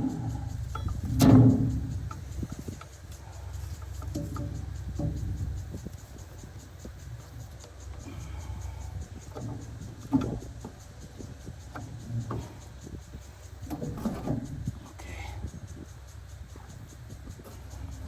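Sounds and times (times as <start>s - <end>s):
handling knocks and clicks: 0.0s - 8.2s, 9.0s - 15.2s.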